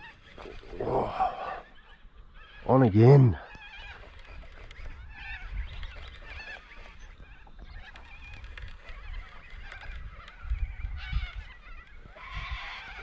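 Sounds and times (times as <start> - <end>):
birds honking calls: 0.0 - 13.0.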